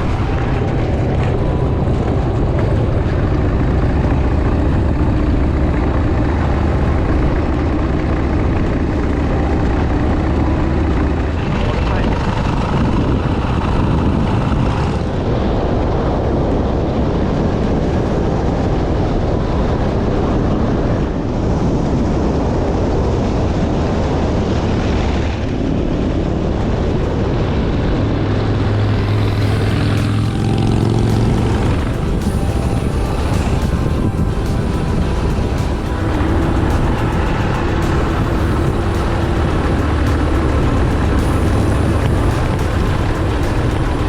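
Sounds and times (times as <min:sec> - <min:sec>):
motorcycle engine running: 0:00.0 - 0:16.2, 0:24.5 - 0:44.0
wind rumble on microphone: 0:00.0 - 0:44.0.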